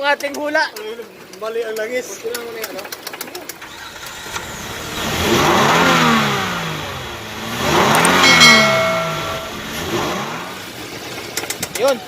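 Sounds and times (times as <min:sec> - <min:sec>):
car engine revving and knocking: 0:03.9 - 0:11.8
steady whine: 0:08.0 - 0:09.8.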